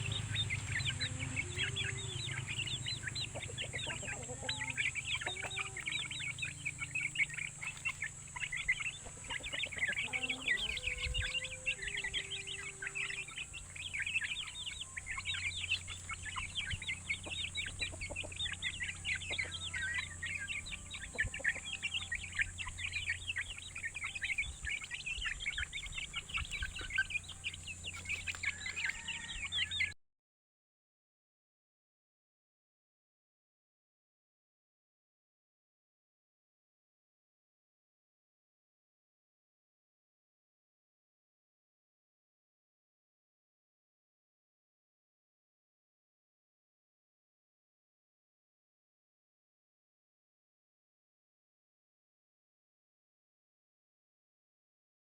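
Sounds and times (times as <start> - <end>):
steady low hum: 0.0 - 29.7
chicks peeping: 0.0 - 30.0
lower longer chick calls: 0.0 - 30.0.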